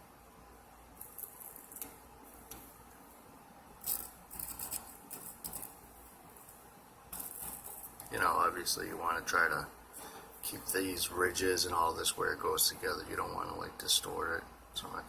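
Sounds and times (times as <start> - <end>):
soldering iron scraping plastic: 3.8 - 6.6, 7.2 - 8.2.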